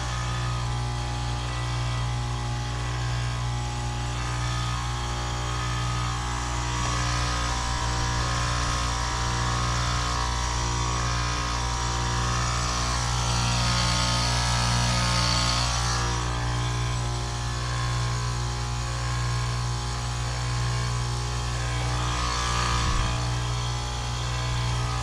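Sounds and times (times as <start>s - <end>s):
compressor hum: 0.0s - 25.0s.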